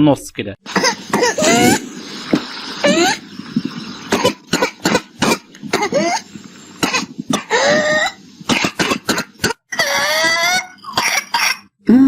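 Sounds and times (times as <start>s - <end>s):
runs of short coughs: 0.7s - 1.8s, 4.1s - 9.6s, 10.8s - 11.7s.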